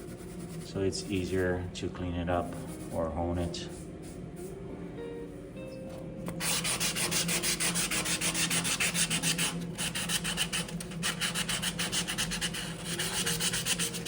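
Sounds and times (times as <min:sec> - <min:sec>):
hand sanding strokes: 0:00.0 - 0:01.6, 0:06.4 - 0:14.0.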